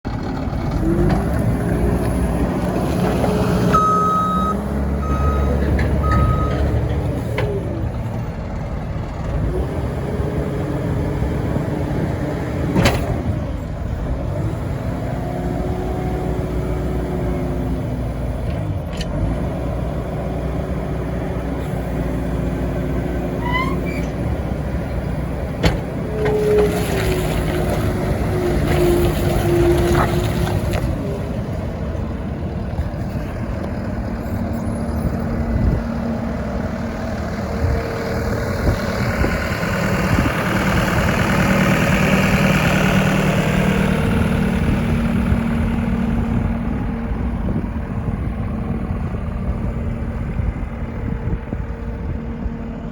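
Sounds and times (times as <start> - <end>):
diesel engine revving: 0.1 - 52.9
short high beeps: 3.8 - 6.5.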